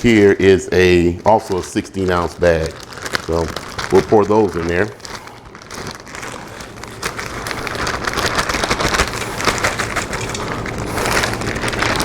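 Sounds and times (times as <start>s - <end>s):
frozen vegetables clattering into pot: 0.0s - 12.0s.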